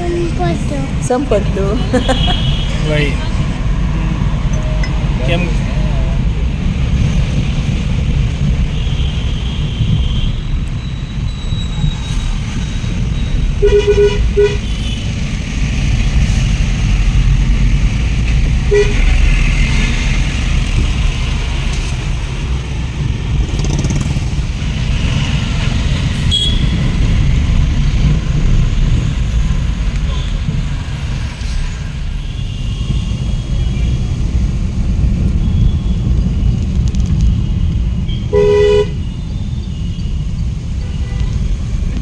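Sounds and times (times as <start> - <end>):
train rumbling: 0.0 - 42.0
train horn toots: 13.6 - 15.0, 18.6 - 19.6, 38.2 - 39.0.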